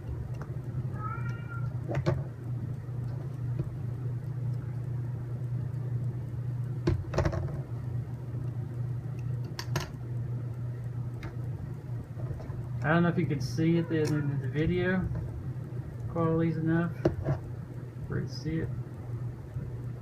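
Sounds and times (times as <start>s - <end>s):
low hum: 0.0s - 20.0s
cat meowing: 0.9s - 1.8s
small parts clicking and knocking: 8.4s - 10.0s.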